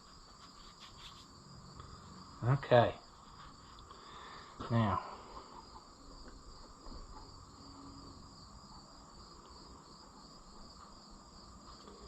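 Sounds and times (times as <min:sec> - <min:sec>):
crickets chirping: 0:00.0 - 0:12.0.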